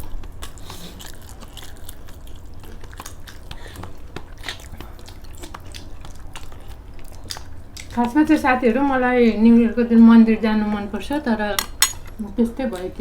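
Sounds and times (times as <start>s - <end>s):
close chewing: 0.0s - 8.2s.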